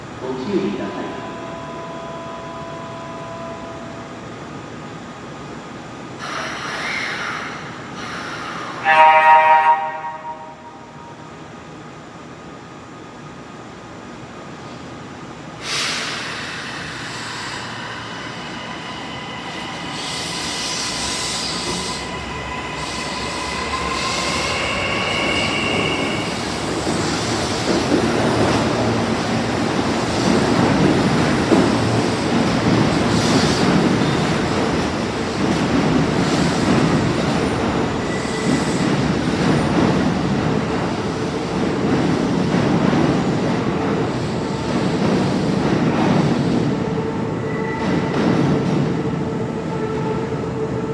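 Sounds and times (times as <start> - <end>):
wheels screeching on rail: 15.6 - 42.5
electric train whining: 15.8 - 42.4.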